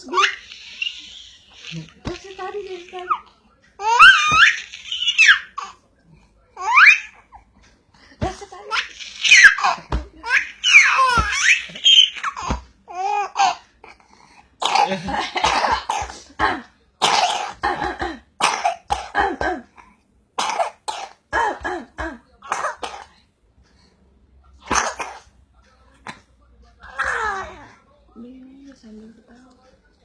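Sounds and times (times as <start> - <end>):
baby laughing: 0.0 - 5.8, 8.3 - 13.6
baby coughing: 8.7 - 14.0, 14.6 - 23.1, 24.6 - 25.3.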